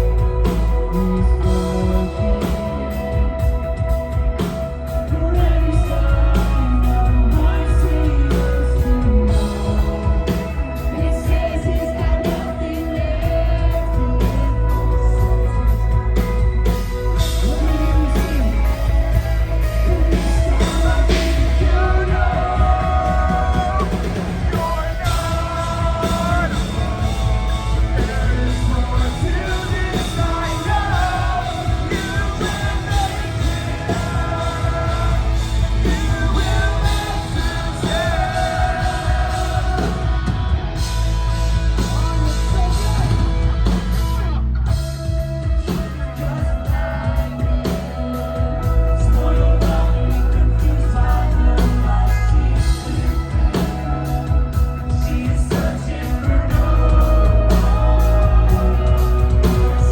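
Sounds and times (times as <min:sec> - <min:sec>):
live rock band playing: 0:00.0 - 0:59.9
sung and yelled vocals: 0:00.0 - 0:59.9.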